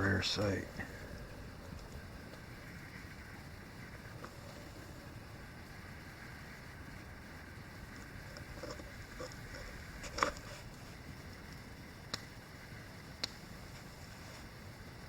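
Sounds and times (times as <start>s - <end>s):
low outdoor hiss: 0.0s - 15.0s
sharp clicks and pops: 7.9s - 10.5s, 11.4s - 12.4s, 13.2s - 13.9s.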